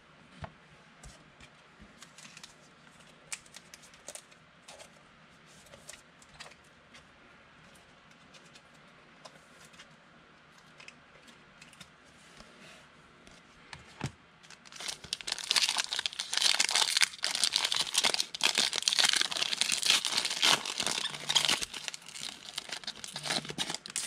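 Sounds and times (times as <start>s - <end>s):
foil wrapper tearing and crinkling: 14.5s - 24.0s.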